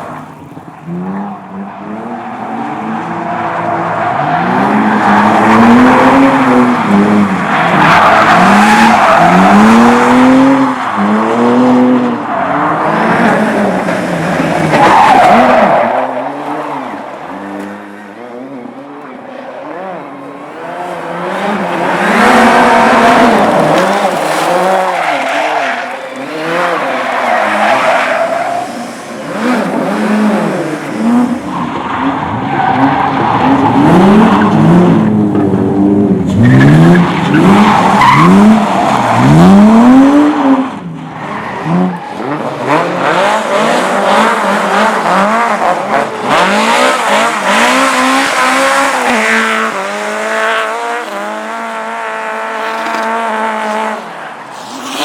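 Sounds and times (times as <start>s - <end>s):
tyres squealing and skidding: 0.0s - 18.2s, 19.1s - 35.0s, 36.3s - 55.0s
race car engines revving: 0.0s - 55.0s.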